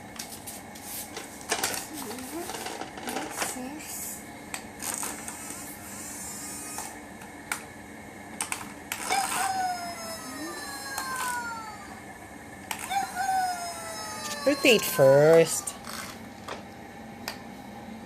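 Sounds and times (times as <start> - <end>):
toy motor hum: 4.8 - 7.0, 8.5 - 12.0, 12.7 - 16.2.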